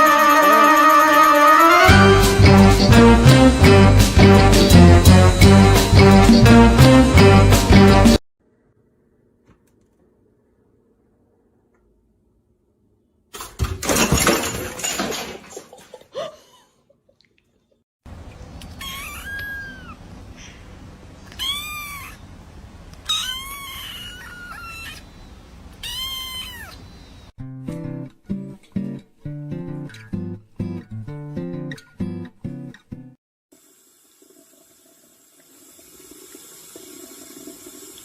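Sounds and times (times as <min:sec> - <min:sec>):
guitar music: 0:00.0 - 0:08.2, 0:27.4 - 0:33.1
cat meowing: 0:18.8 - 0:20.0, 0:21.2 - 0:22.2, 0:23.0 - 0:25.1, 0:25.8 - 0:26.9.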